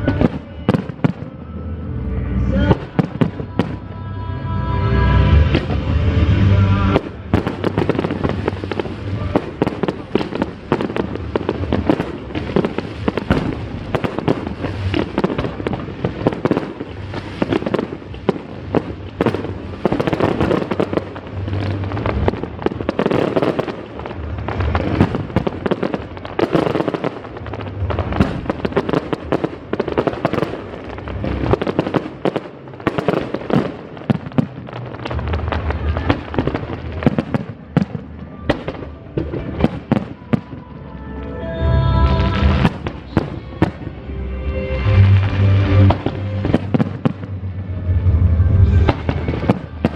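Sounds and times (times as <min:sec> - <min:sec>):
fireworks crackling bangs: 0:00.0 - 0:01.5, 0:02.6 - 0:04.0, 0:05.3 - 0:41.0, 0:42.0 - 0:44.1, 0:44.8 - 0:49.9
deep firework booms: 0:05.4 - 0:40.6, 0:45.2 - 0:49.9.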